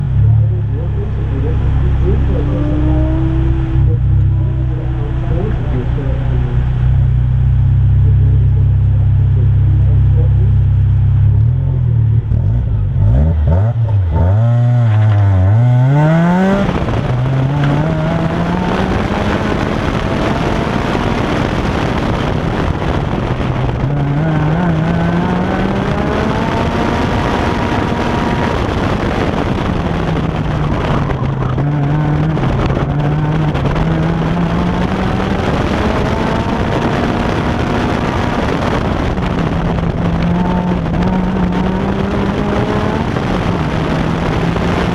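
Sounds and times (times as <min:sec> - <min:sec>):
car engine revving hard: 0:12.2 - 0:44.9.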